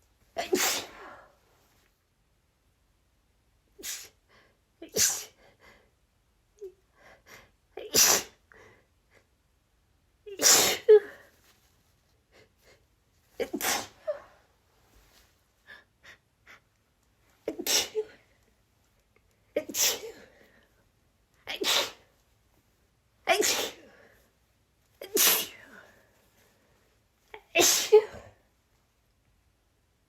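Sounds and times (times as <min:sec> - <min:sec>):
woman sneezing: 0:00.4 - 0:01.2, 0:04.9 - 0:05.4, 0:07.8 - 0:08.4, 0:10.4 - 0:11.2, 0:13.4 - 0:14.3, 0:17.5 - 0:18.2, 0:19.6 - 0:20.2, 0:21.5 - 0:22.0, 0:23.3 - 0:23.9, 0:25.0 - 0:25.8, 0:27.4 - 0:28.4.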